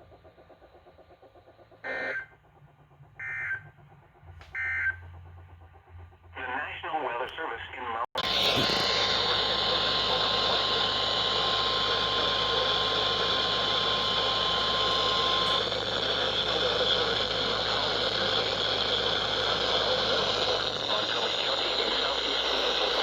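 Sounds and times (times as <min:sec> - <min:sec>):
radio hiss and static: 0:06.4 - 0:10.9, 0:14.8 - 0:23.0.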